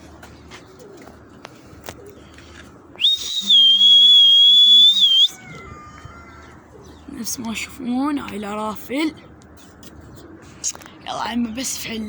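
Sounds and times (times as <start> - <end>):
shrill whistle: 3.0 - 5.4.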